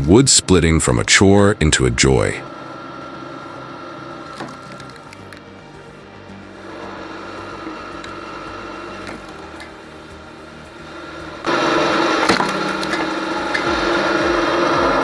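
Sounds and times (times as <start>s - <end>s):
wood-processing machine running: 0.0s - 15.0s
wood cracking: 11.4s - 13.8s
wood being broken up: 12.2s - 13.7s.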